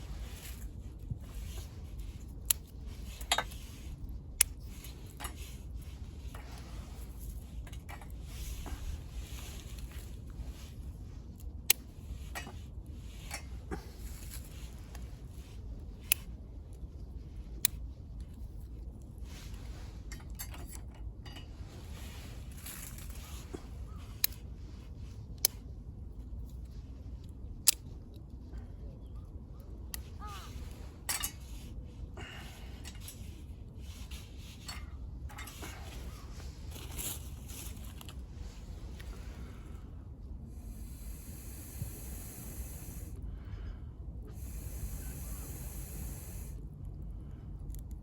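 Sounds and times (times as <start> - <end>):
wood crackling in stove: 0.0 - 48.0
low stove rumble: 29.6 - 46.5.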